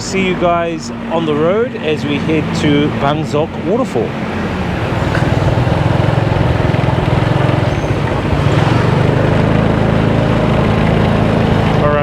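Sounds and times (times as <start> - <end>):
motorbike engine running: 0.2 - 12.0
wind rushing over microphone: 2.4 - 11.8.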